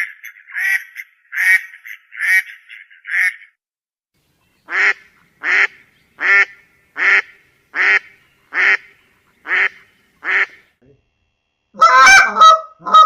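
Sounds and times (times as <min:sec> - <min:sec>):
bird honking calls: 0:04.4 - 0:10.8.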